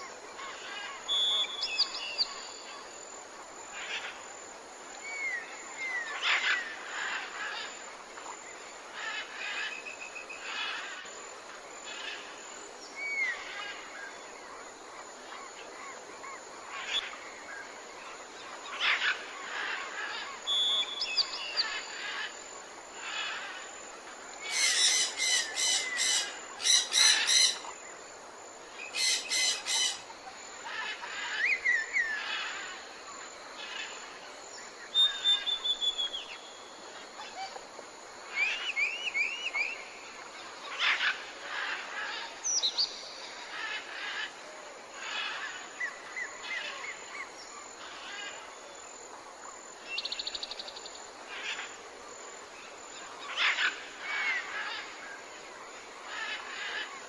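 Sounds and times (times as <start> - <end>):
steady faint hiss: 0.0 - 57.0
birds calling and chirping: 24.4 - 27.8, 28.8 - 32.5.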